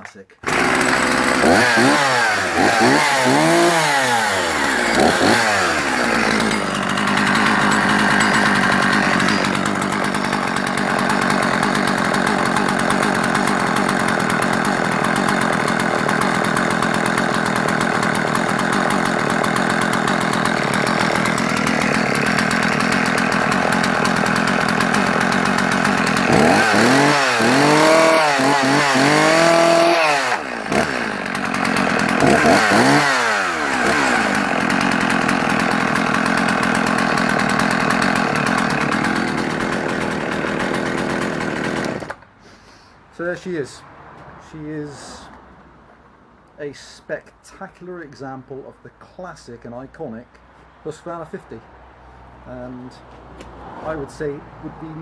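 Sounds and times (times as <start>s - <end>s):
chainsaw engine revving and idling: 0.4s - 42.3s.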